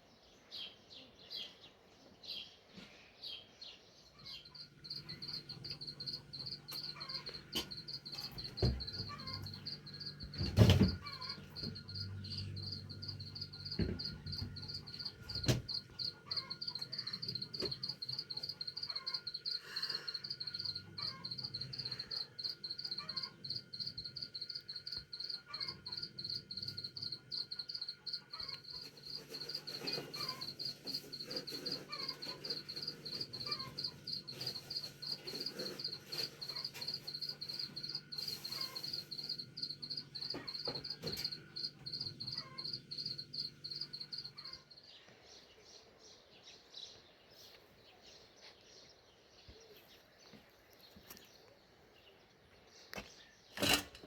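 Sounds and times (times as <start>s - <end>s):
crickets chirping: 4.5s - 44.7s.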